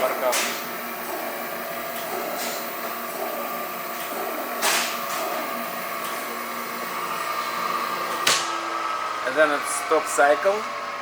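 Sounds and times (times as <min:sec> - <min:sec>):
surface grinder humming: 0:00.0 - 0:11.0.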